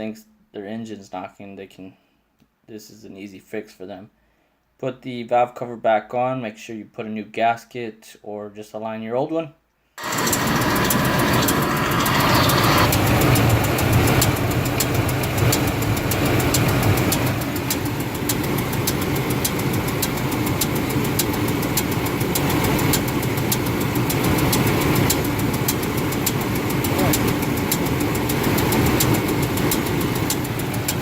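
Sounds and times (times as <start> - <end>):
engine idling with valve ticking: 10.0 - 31.0.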